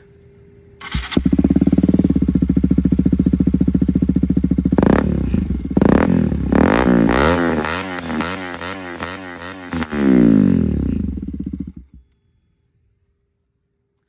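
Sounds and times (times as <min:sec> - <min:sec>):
motorcycle engine revving: 0:00.8 - 0:12.0.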